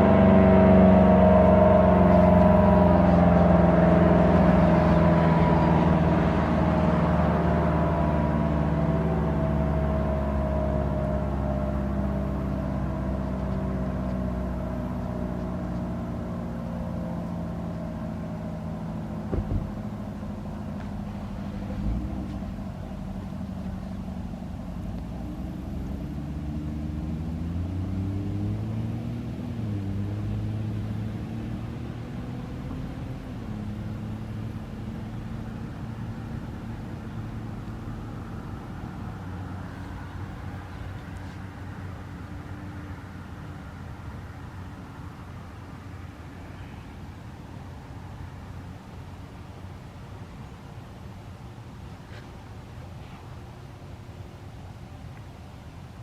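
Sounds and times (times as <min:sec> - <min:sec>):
low engine-like rumble: 0:00.0 - 0:56.0
short knocks: 0:19.3 - 0:19.8.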